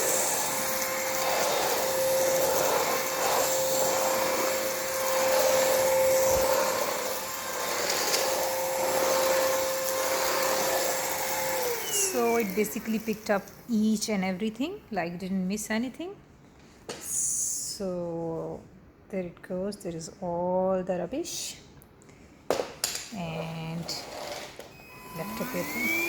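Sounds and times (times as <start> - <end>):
stick vacuum cleaner motor whine: 0.0 - 13.6, 24.2 - 26.0
vacuum sucking up debris: 0.0 - 13.6, 24.8 - 26.0.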